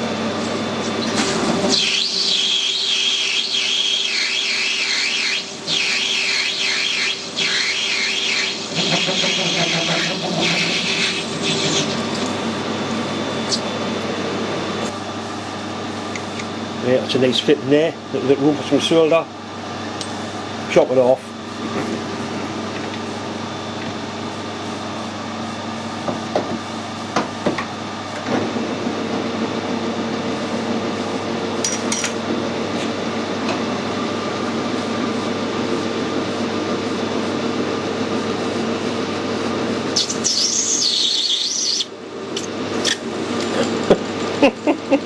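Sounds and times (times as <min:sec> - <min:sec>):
metal lathe hum: 0:00.0 - 0:16.8
rasping cutting noise: 0:06.7 - 0:12.2.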